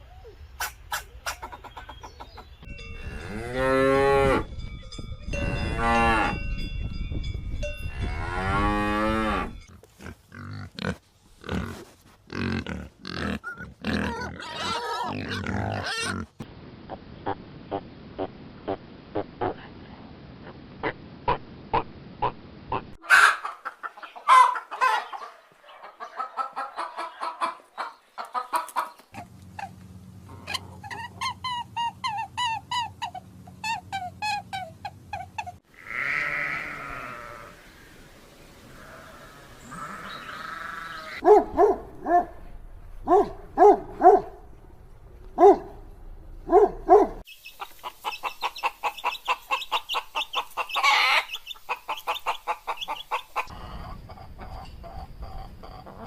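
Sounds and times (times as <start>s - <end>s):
chickens clucking: 0.6s - 2.7s, 22.2s - 35.6s, 47.2s - 56.0s
farm animals calling: 8.0s - 16.4s, 20.8s - 37.8s, 38.6s - 42.2s, 46.4s - 56.0s
pigs grunting: 9.3s - 16.4s.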